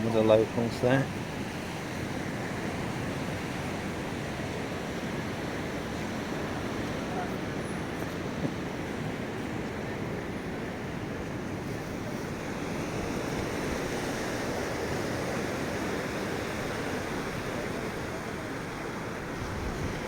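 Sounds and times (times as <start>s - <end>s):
ocean surf breaking: 0.0s - 20.0s
wind on microphone: 19.2s - 20.0s.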